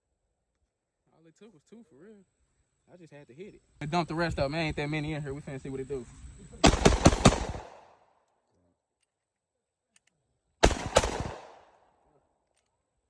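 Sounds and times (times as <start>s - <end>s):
gunshots with echoing tail: 6.6s - 8.0s, 10.6s - 11.8s.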